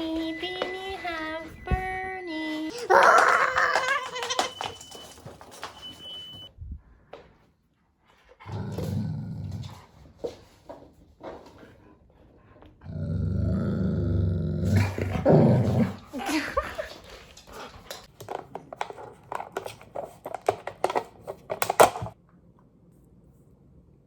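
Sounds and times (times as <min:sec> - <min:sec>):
dog growling low: 0:08.4 - 0:10.0, 0:12.8 - 0:16.2.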